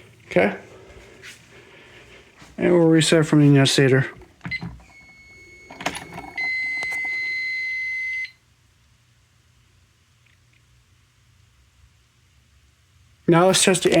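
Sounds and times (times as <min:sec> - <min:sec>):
control clicks and knock: 0:04.1 - 0:05.1, 0:05.7 - 0:07.0
high buzzer beep: 0:04.5 - 0:08.3.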